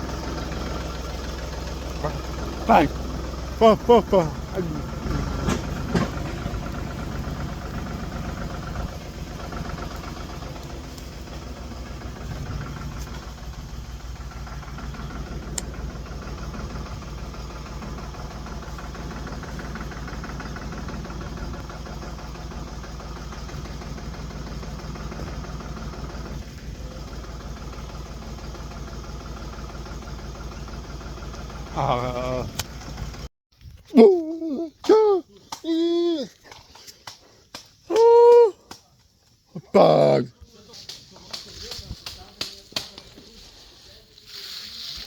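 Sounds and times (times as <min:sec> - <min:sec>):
engine humming with fast pulse: 0:00.0 - 0:33.3.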